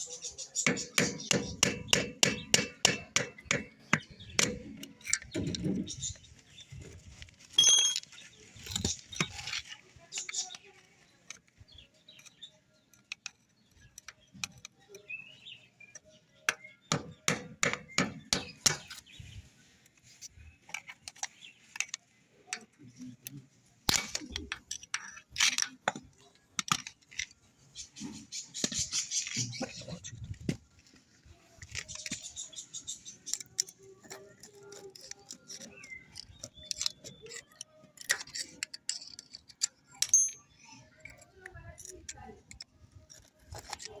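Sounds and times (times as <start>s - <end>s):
metal tools clanking: 7.6s - 10.6s, 33.3s - 42.6s.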